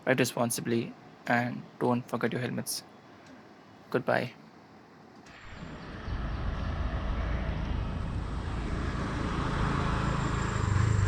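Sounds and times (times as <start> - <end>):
motor vehicle passing: 5.4 - 11.0.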